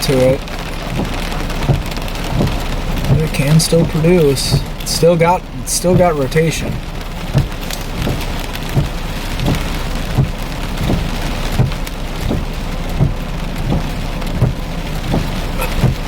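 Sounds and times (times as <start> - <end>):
heavy rain on a vehicle: 0.0 - 16.0
regular low thump: 0.0 - 16.0.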